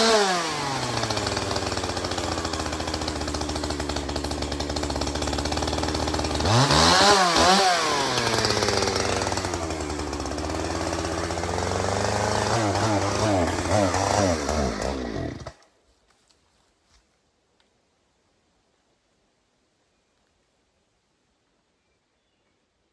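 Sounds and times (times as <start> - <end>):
chainsaw engine idling and revving: 0.0 - 15.7.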